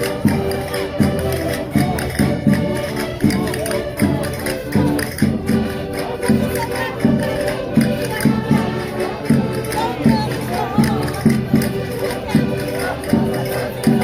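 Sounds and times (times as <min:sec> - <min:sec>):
concertinas playing folk dance tune: 0:00.0 - 0:14.0
steady pulsing beat: 0:00.0 - 0:14.0.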